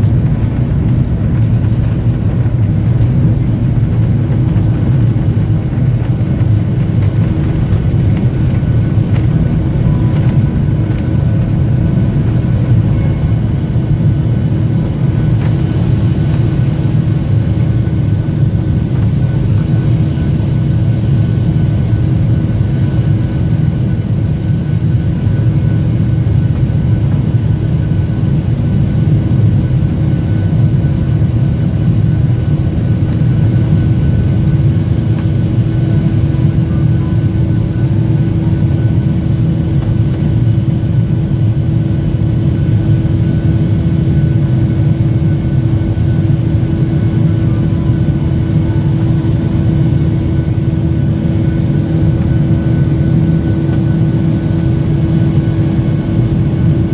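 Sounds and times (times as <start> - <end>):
faint whining tones: 0.0 - 14.2
jet engines rumbling: 0.0 - 56.9.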